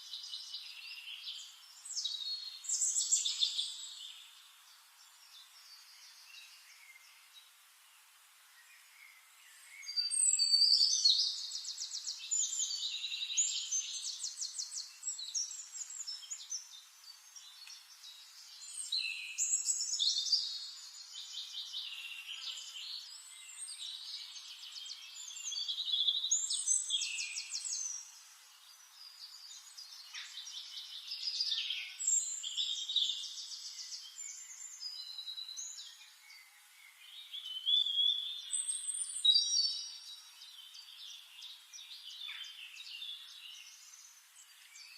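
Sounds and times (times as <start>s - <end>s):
songbird singing trills: 0.0s - 7.5s, 8.5s - 44.9s.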